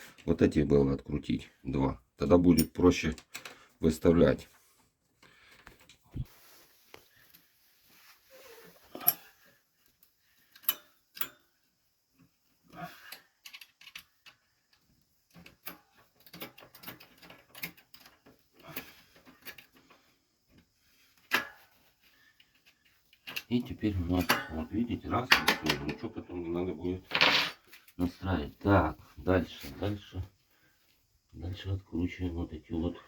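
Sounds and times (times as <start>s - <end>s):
hand tools clicking on screws: 12.9s - 14.4s.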